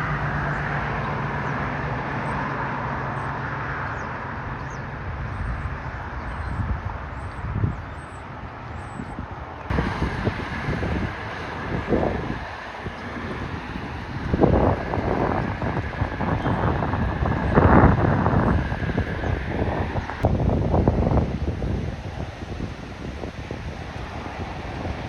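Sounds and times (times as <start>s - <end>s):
distant traffic: 0.0s - 25.0s
wind: 0.0s - 25.0s
wind thumps on microphone: 5.0s - 25.0s.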